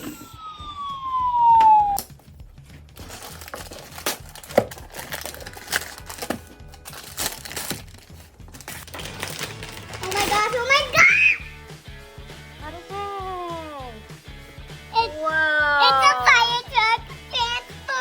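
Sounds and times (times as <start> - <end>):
descending whistle-like tone: 0.0 - 2.1
toy packaging crinkling: 3.0 - 10.8.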